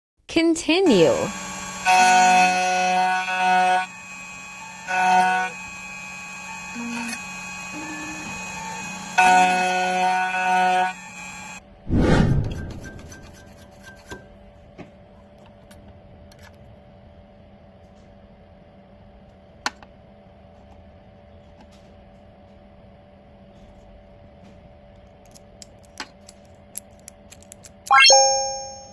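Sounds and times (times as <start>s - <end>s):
key cutting machine humming: 0.9s - 11.6s.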